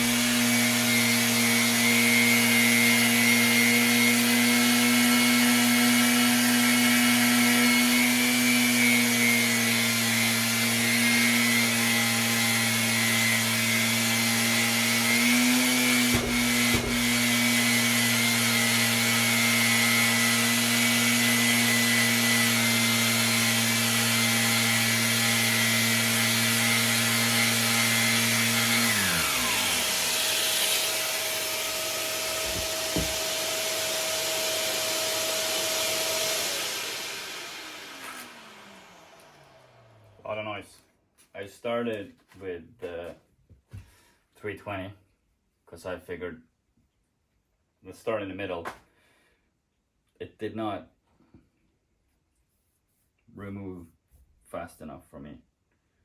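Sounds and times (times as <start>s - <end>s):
orbital sander sanding: 0.0s - 40.0s
dust extractor running: 0.0s - 40.3s
brief knock: 16.1s - 17.2s.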